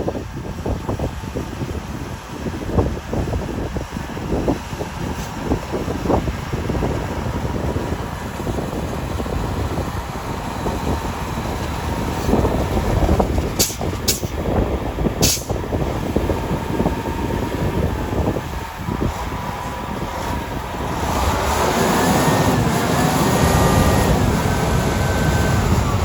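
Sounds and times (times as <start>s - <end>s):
diesel engines rumbling: 0.0s - 26.0s
short sharp hisses: 13.6s - 14.4s, 15.2s - 15.6s.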